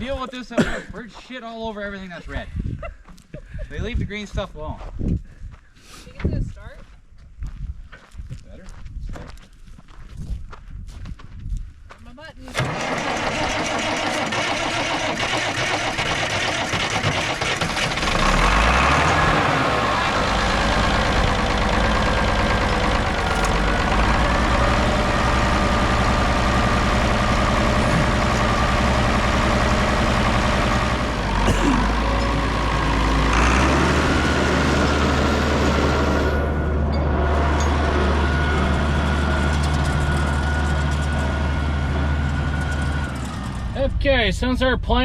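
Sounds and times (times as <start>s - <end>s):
heavy vehicle engine running: 12.6s - 44.8s.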